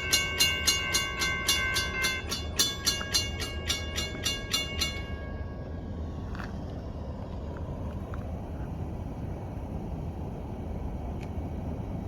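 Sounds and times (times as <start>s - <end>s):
railroad crossing bell ringing: 0.0s - 6.1s.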